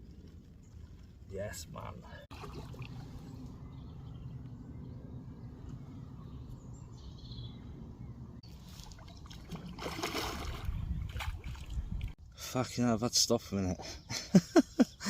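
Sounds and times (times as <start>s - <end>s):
steady low rumble: 0.0s - 8.4s.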